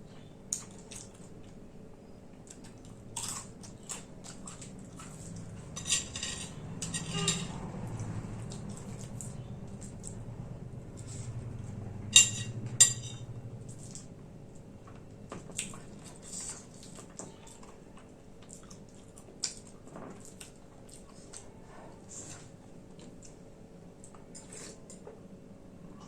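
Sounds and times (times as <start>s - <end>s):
utensils scraping a dish: 5.3s - 7.7s
utensil clinking on metal dish: 5.8s - 7.6s, 12.2s - 13.3s.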